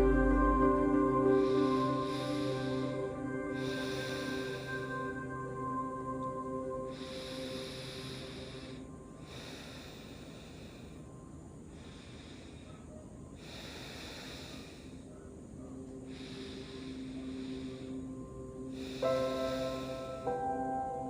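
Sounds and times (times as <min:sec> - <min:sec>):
ambient music drone: 0:00.0 - 0:21.0
person breathing in sleep: 0:00.7 - 0:20.8.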